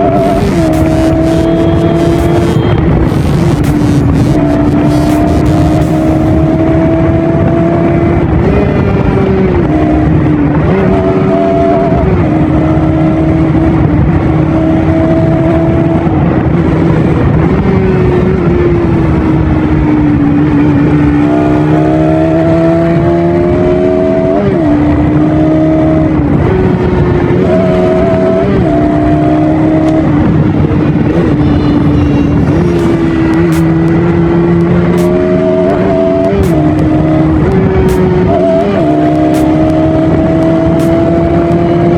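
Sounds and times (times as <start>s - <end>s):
motorcycle engine running: 0.0s - 9.6s, 30.4s - 41.9s.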